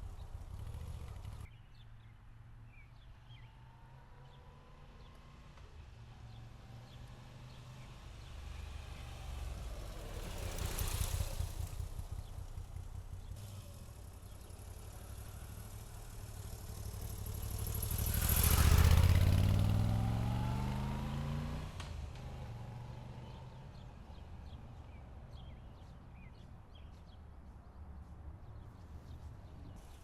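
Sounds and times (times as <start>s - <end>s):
motorcycle engine idling: 0.0s - 1.5s, 7.9s - 21.2s
vehicle passing by: 3.4s - 30.0s.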